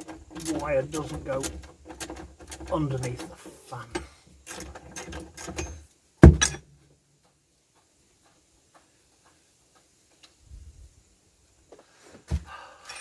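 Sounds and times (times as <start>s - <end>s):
tools clicking and rattling: 0.0s - 6.6s
sharp knocks: 5.5s - 6.6s.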